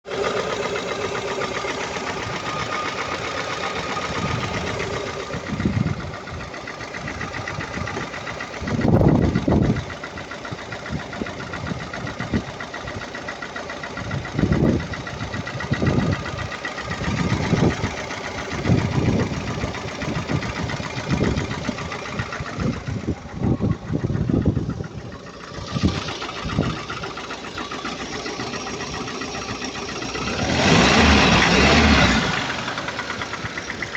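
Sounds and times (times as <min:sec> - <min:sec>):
engine revving: 0:00.0 - 0:06.5, 0:15.6 - 0:24.7, 0:25.6 - 0:33.9
knocking petrol engine: 0:00.0 - 0:33.9.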